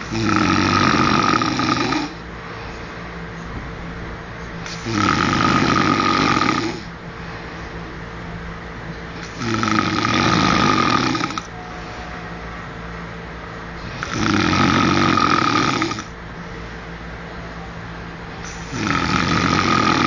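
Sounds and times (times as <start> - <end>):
man snoring: 0.0 - 2.2, 4.7 - 6.9, 9.2 - 11.5, 13.8 - 16.1, 18.4 - 20.0.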